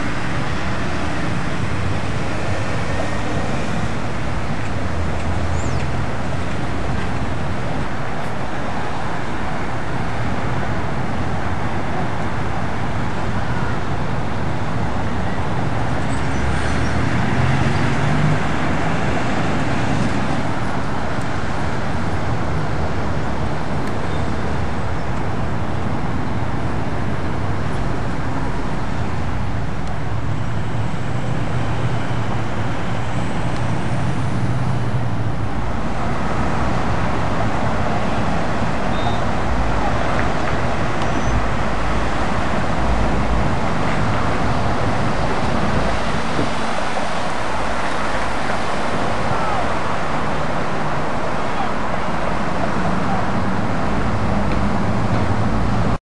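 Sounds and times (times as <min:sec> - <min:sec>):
car driving road noise: 0:00.0 - 0:56.0.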